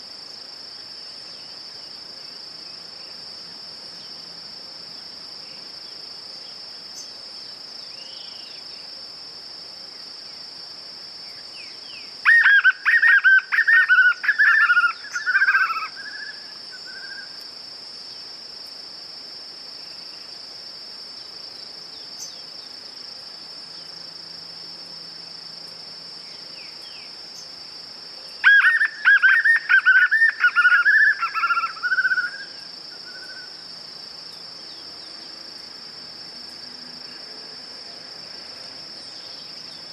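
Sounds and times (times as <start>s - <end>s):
high-pitched insect drone: 11.2s - 18.8s, 21.4s - 39.9s
bird whistling song: 11.6s - 17.4s, 28.4s - 33.6s.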